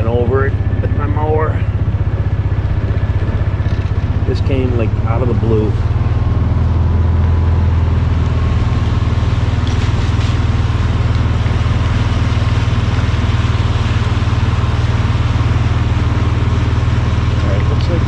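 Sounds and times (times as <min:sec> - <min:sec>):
small engine droning: 0:00.0 - 0:18.0.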